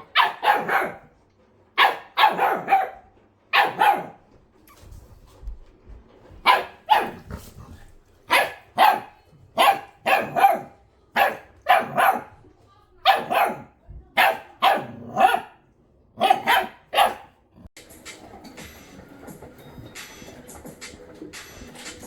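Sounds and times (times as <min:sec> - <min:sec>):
dog barking: 0:00.0 - 0:01.1, 0:01.8 - 0:04.2, 0:06.4 - 0:07.3, 0:08.3 - 0:12.4, 0:13.0 - 0:15.6, 0:16.2 - 0:17.4.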